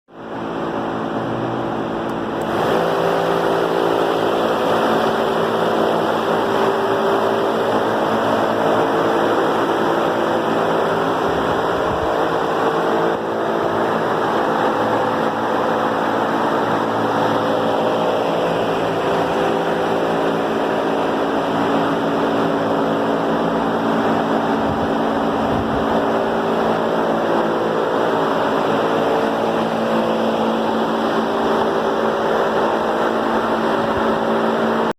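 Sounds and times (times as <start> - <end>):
industrial fan humming: 0.1 - 34.9.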